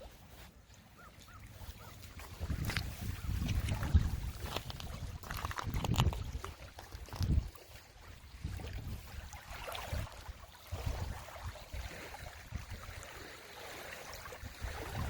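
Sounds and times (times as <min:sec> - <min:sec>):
faint sea water: 0:00.0 - 0:15.0
wind gusting against microphone: 0:02.2 - 0:13.0, 0:14.3 - 0:15.0.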